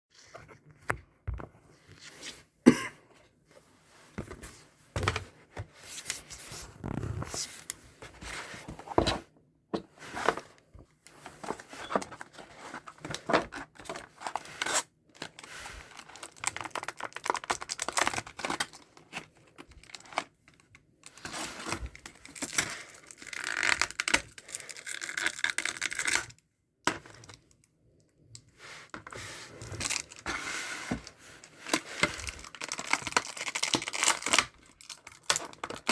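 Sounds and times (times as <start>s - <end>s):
packaging tearing and rustling: 11.5s - 20.3s, 31.6s - 35.9s.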